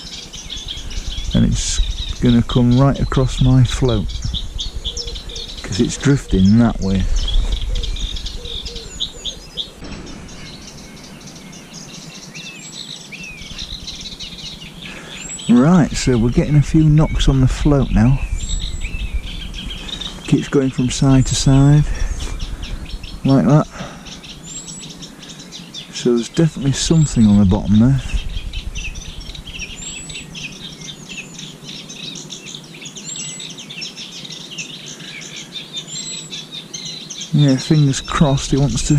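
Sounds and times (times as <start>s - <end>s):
songbirds singing: 0.0s - 38.9s
low rumble: 0.2s - 12.0s, 13.2s - 25.0s, 26.5s - 30.9s.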